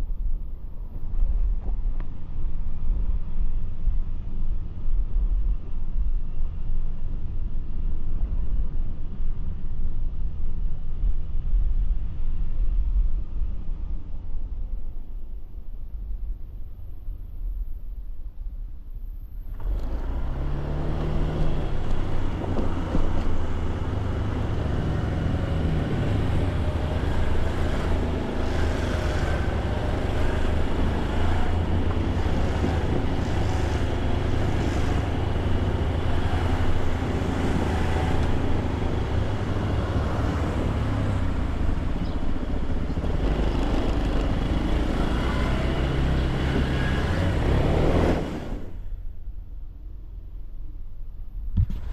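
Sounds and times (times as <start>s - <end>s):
wind noise: 0.0s - 51.9s
road noise: 19.0s - 51.9s
vehicle engine running: 19.4s - 49.0s.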